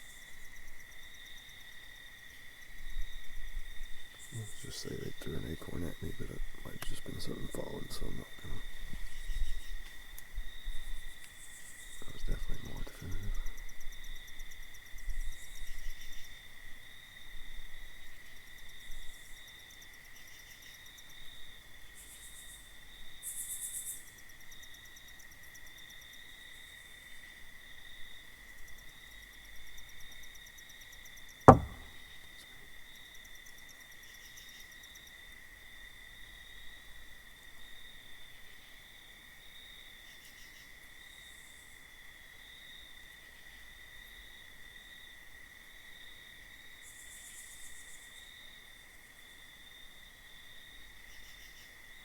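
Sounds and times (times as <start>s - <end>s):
crickets trilling: 0.0s - 27.0s
sharp knock: 31.5s - 32.0s.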